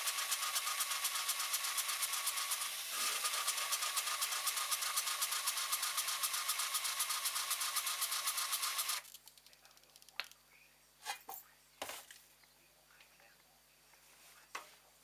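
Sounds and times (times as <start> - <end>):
rapid mechanical ticking: 0.0 - 9.0.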